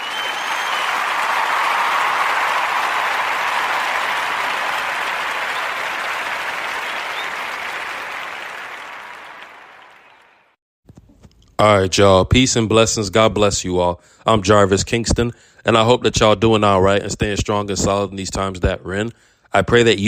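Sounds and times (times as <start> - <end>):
crowd applause: 0.0 - 10.6.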